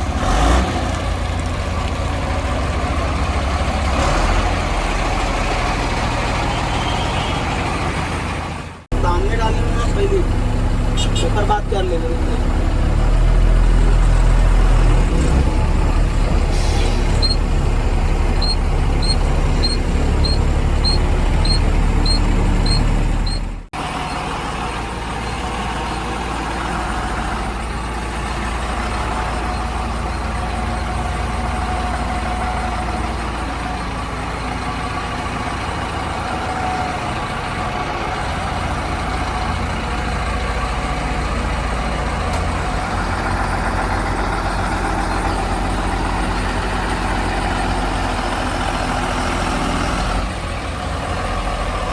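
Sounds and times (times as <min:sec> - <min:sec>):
heavy diesel engines running: 0:00.0 - 0:51.9
reversing alarm beeping: 0:17.2 - 0:17.5, 0:18.4 - 0:24.2.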